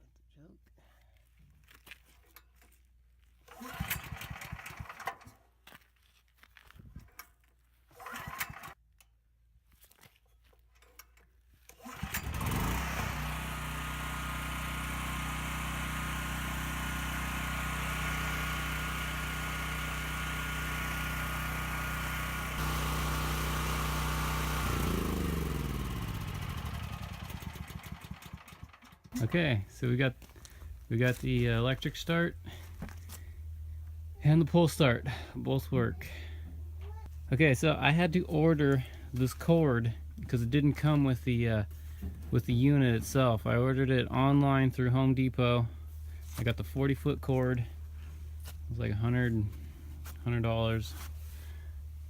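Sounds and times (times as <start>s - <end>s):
recoil starter tugs: 3.4s - 5.4s, 7.0s - 9.1s, 10.8s - 52.0s
engine spinning down: 3.5s - 5.1s, 11.8s - 29.2s
small generator engine running: 3.5s - 5.4s, 8.0s - 8.8s, 11.7s - 29.4s.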